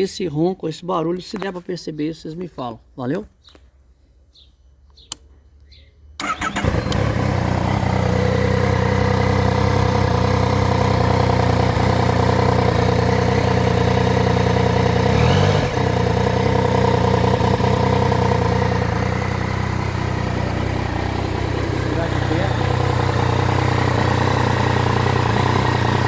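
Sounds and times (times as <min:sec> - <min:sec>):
motorcycle engine idling: 0:06.2 - 0:26.0.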